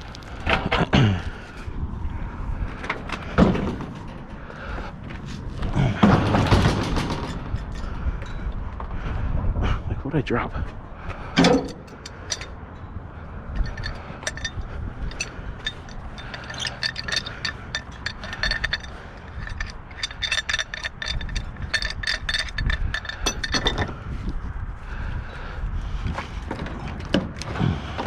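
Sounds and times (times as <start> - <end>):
scrap metal clinking and scraping: 6.0 - 8.0, 11.3 - 24.0.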